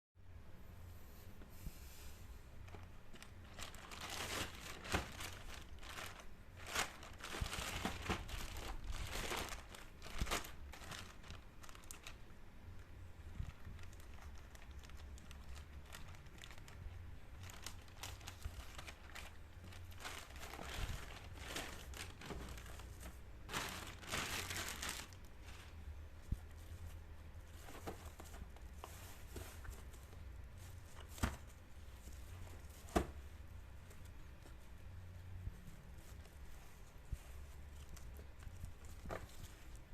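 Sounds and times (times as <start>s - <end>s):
low steady hum: 0.2s - 39.9s
packaging crinkling and tearing: 2.7s - 12.3s, 13.4s - 25.8s.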